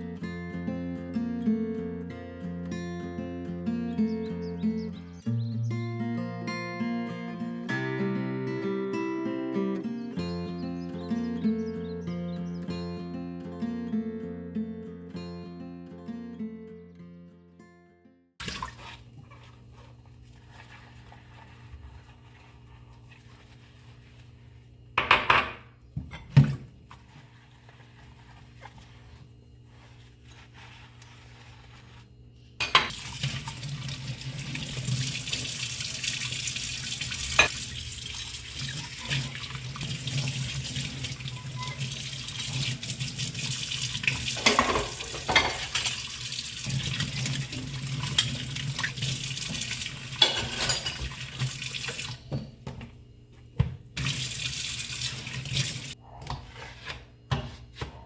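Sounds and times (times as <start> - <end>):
dishware knocking: 25.0 - 26.5, 44.4 - 45.7.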